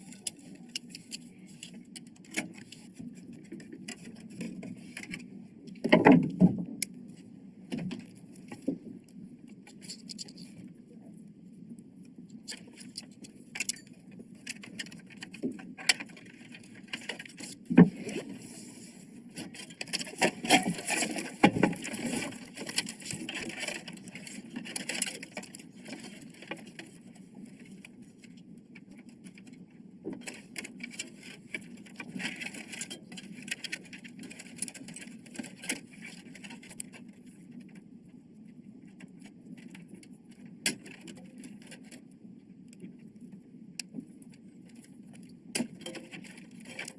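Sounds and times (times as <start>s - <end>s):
computer parts clicking and scraping: 0.0s - 7.0s, 7.7s - 10.7s, 12.4s - 18.4s, 19.3s - 27.1s.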